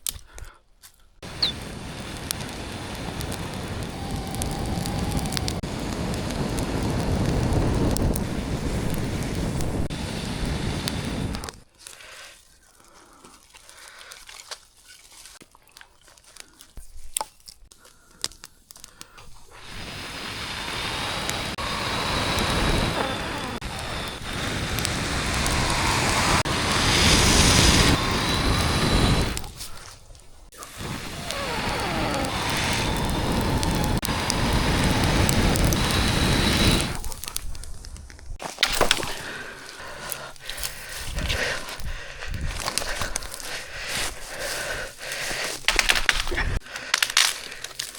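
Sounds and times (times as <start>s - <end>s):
kindling crackling: 0.0s - 47.9s
campfire rushing noise: 1.2s - 12.3s, 18.8s - 47.9s
loud steady rushing noise: 19.6s - 29.4s.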